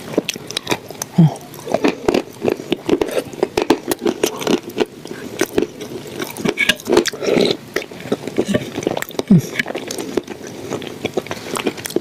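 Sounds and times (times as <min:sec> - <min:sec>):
person chewing food crunchily: 0:00.0 - 0:12.0
wet mouth sounds: 0:00.0 - 0:12.0.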